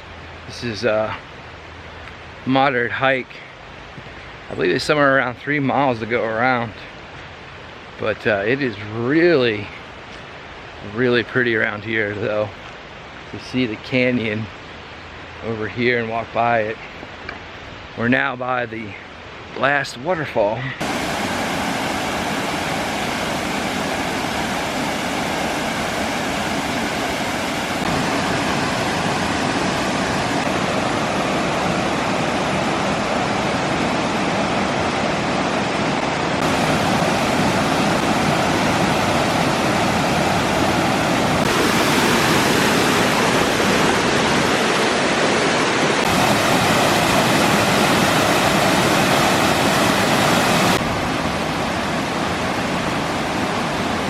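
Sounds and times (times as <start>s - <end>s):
waterfall rushing: 20.8s - 54.0s.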